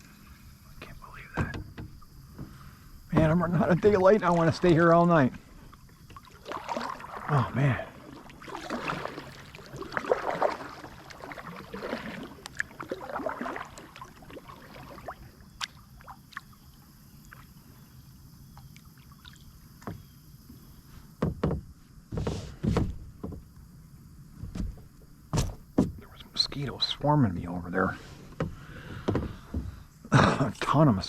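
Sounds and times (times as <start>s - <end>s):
kayak paddle splashing in water: 0.0s - 17.6s
light clicks and knocks: 0.8s - 4.0s, 21.2s - 23.6s, 24.4s - 29.8s
low thumps: 0.8s - 4.1s.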